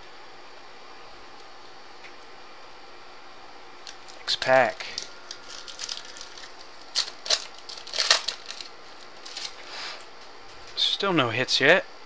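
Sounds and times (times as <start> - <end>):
wrapper crinkling and tearing: 3.9 - 9.6.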